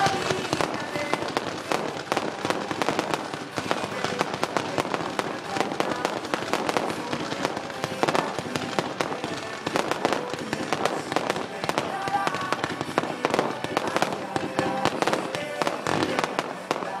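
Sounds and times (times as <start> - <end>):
fireworks bangs and crackles: 0.0 - 17.0
music playing: 0.0 - 17.0.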